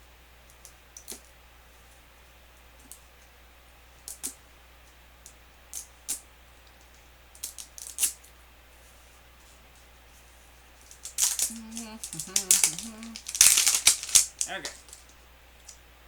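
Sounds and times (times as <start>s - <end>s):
plastic capsule clicks: 10.9s - 15.1s.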